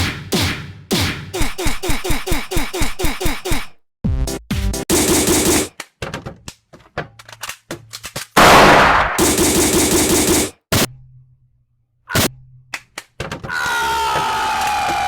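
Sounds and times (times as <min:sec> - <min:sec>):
loud noisy blast: 0:08.4 - 0:09.2.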